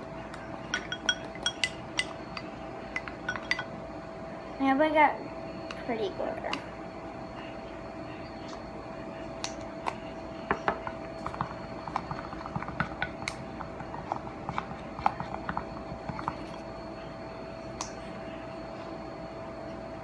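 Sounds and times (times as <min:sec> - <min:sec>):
faint steady hum: 0:00.0 - 0:20.0.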